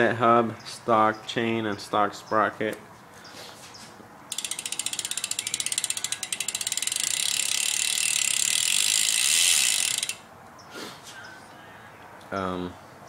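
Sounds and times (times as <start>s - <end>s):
bike freewheel ratcheting clicks: 4.3s - 10.3s.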